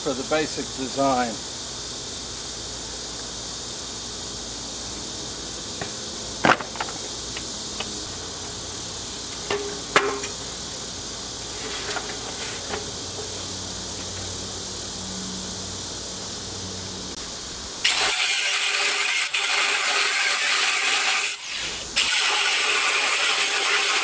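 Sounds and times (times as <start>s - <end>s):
steady hiss: 0.0s - 24.0s
metal tools knocking and clinking: 9.5s - 10.4s.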